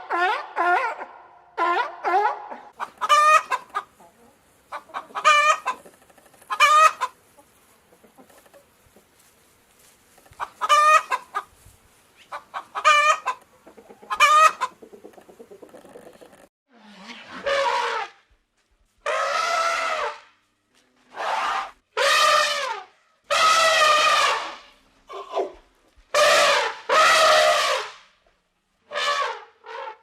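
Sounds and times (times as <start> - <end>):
domestic fowl calling: 0.0 - 11.6, 12.2 - 16.3, 19.0 - 20.3, 21.1 - 28.1, 28.9 - 30.0.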